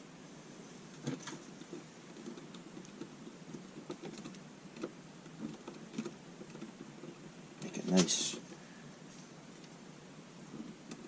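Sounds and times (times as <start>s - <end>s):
wires clicking while twisted: 0.9s - 8.5s.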